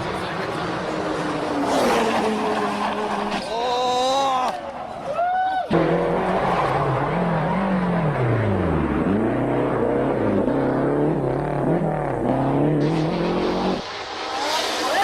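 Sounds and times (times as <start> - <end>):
rally car engine revving: 0.0 - 4.3, 5.7 - 15.0.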